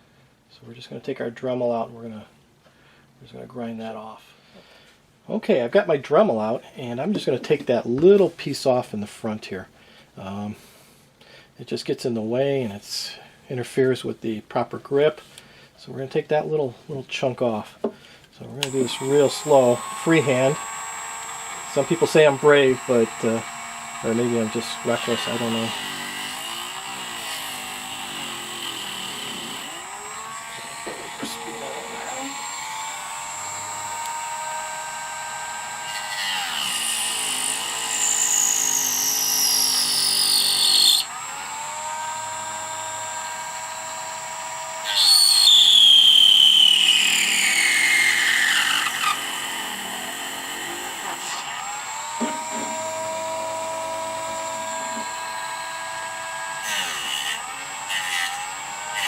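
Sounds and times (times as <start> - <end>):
rotary tool grinding rubber: 18.6 - 59.0.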